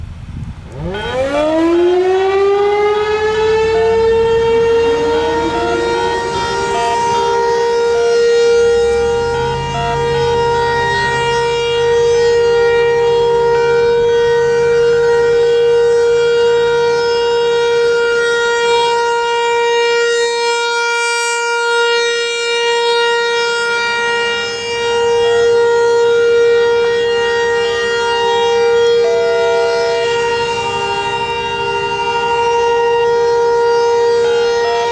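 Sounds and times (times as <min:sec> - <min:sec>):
tornado siren wailing: 0:00.0 - 0:34.9
second lower siren tone: 0:00.7 - 0:34.9.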